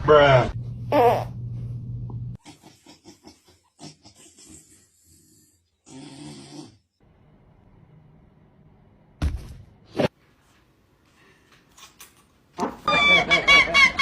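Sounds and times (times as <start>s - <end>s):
low hum: 0.0s - 2.4s
pet snoring: 5.0s - 6.9s.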